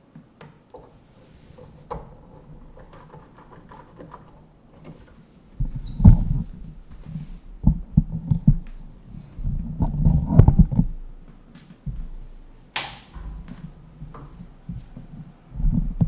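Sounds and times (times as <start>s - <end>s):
power cord knocks and thumps: 11.9s - 15.0s.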